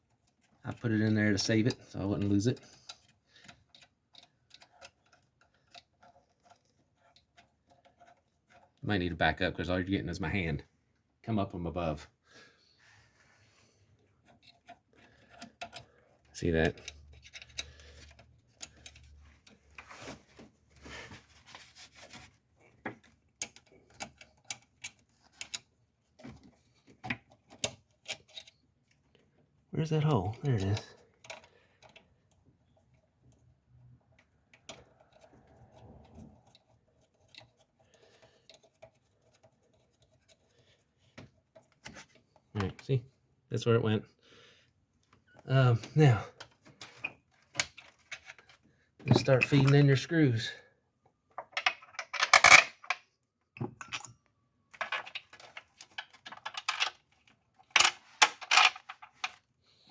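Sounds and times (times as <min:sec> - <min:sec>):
metal bolts clinking and rattling: 0:51.4 - 0:53.1, 0:54.7 - 0:59.4.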